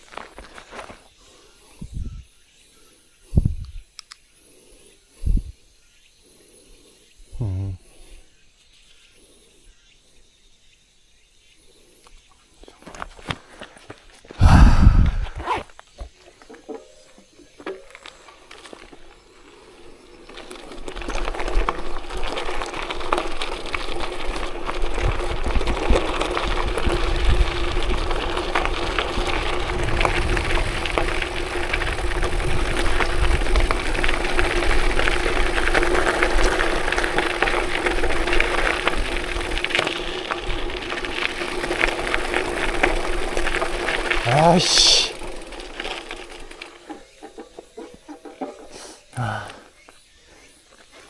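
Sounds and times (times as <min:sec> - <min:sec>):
road and wind noise: 0:00.0 - 0:02.3, 0:03.3 - 0:04.2, 0:05.2 - 0:05.6, 0:12.8 - 0:48.7.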